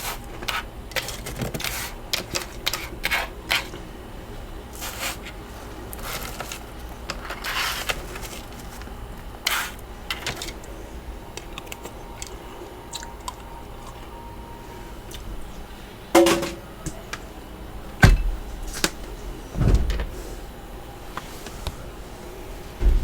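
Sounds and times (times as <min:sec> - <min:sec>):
scraping freezer frost: 0:00.0 - 0:13.4.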